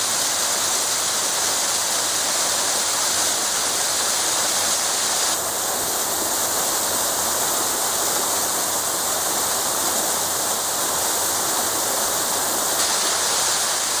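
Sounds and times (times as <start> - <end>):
small waterfall pouring: 0.0 - 14.0.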